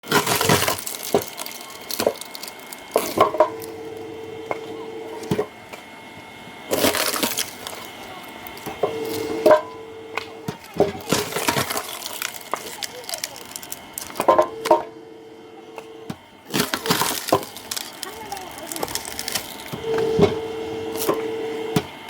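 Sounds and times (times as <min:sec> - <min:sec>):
firewood cracking and splintering: 0:00.0 - 0:04.0, 0:06.7 - 0:14.8, 0:16.1 - 0:20.3
steady hum: 0:00.0 - 0:22.0.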